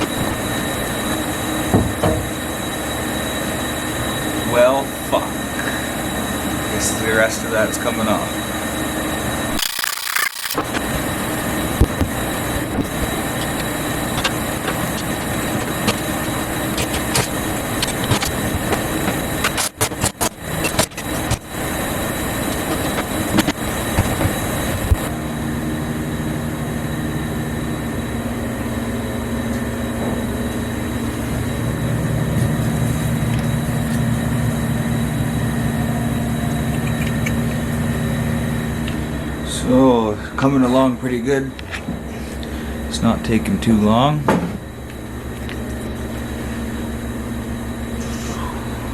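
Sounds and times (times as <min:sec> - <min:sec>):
shop heater noise: 0:00.0 - 0:48.9
thin high whine: 0:00.0 - 0:48.9
deep steady hum: 0:09.1 - 0:40.4, 0:43.9 - 0:48.9
knocks and clatter of demolition: 0:11.8 - 0:21.5.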